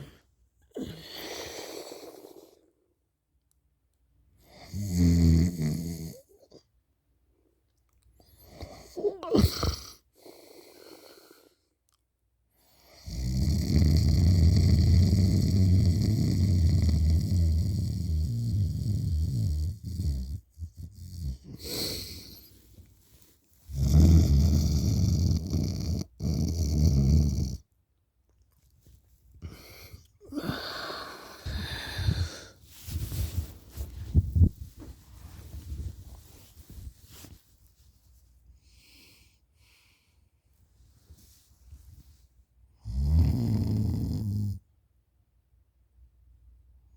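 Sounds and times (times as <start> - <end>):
quiet breaths: 0.0 - 3.2, 5.5 - 26.2, 28.6 - 44.6
person snoring loudly: 4.7 - 6.2, 13.0 - 22.4, 23.7 - 27.6, 30.3 - 32.5, 42.8 - 44.6.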